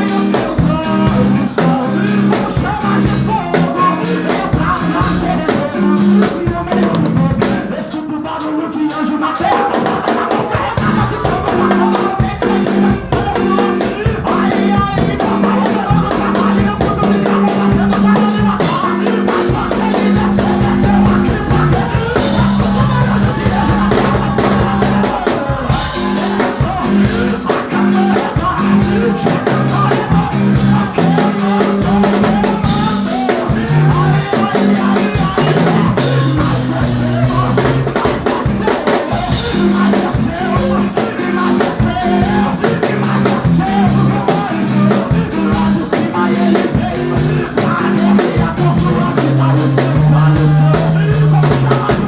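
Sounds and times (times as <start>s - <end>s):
drum kit and crashing cymbals: 0.0s - 52.0s
worship band playing: 0.0s - 52.0s
keyboard notes: 9.4s - 52.0s
sustained low bass: 19.5s - 25.1s.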